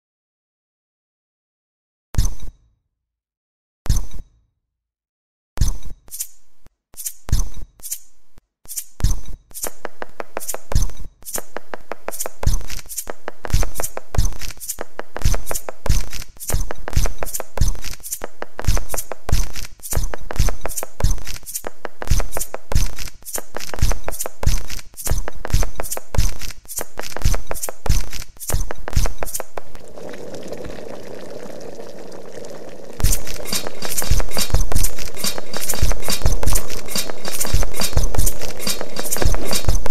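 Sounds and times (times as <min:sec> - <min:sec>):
rhythmic beat of kitchen sounds: 0:09.6 - 0:39.9.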